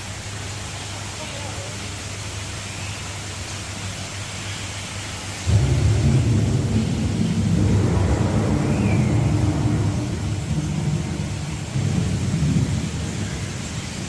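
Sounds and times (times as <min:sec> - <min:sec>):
steady hiss: 0:00.0 - 0:14.0
loud low rumble: 0:05.5 - 0:13.3.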